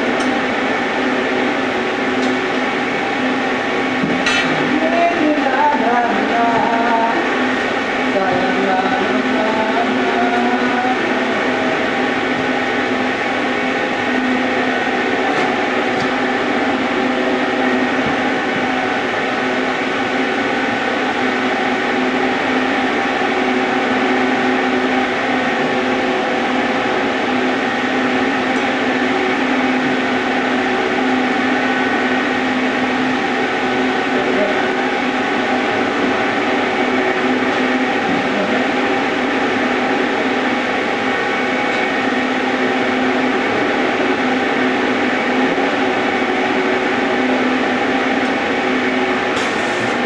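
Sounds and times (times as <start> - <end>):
electrical hum: 0.0 - 50.0
arc welding hiss: 49.4 - 50.0.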